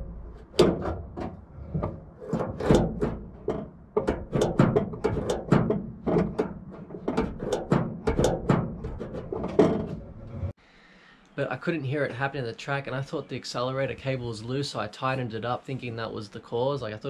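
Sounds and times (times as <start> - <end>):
throttle linkage clacking: 0.6 - 9.9.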